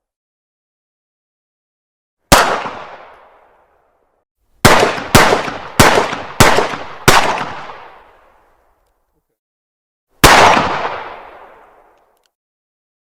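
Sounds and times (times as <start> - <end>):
pistol shots echoing: 2.3 - 3.5, 4.6 - 8.2, 10.2 - 12.0.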